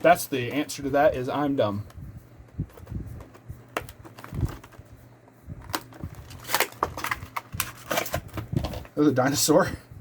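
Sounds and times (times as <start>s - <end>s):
faint steady hum: 0.0s - 10.0s
trading cards clicking and rustling: 2.6s - 4.9s, 5.6s - 9.0s.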